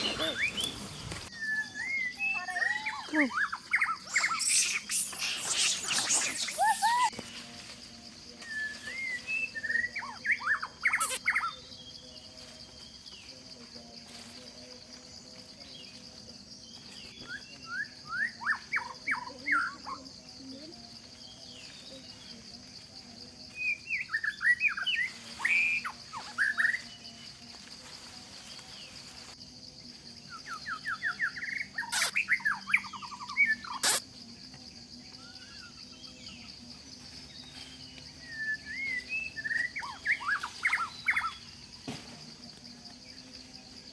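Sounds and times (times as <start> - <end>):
birds chirping: 0.0 - 7.2
high-pitched insect drone: 0.0 - 43.9.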